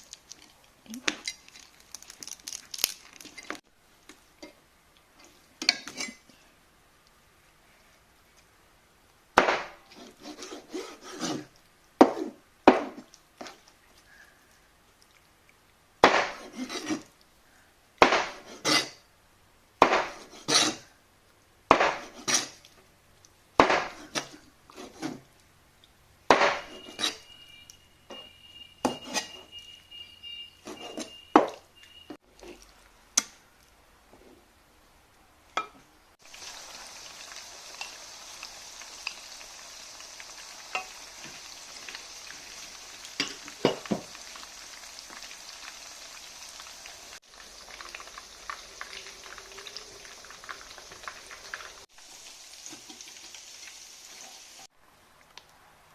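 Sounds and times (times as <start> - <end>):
food sizzling in a pan: 36.2 - 54.7.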